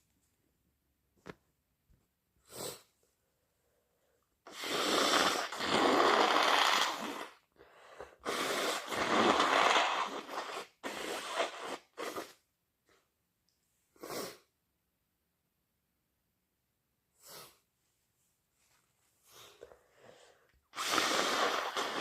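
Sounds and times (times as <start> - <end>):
person blowing nose: 2.4 - 2.9, 4.5 - 12.5, 14.0 - 14.5, 17.2 - 17.6, 19.2 - 22.0
sniff: 2.4 - 3.1, 4.5 - 13.1, 13.9 - 14.6, 17.1 - 17.7, 19.2 - 22.0.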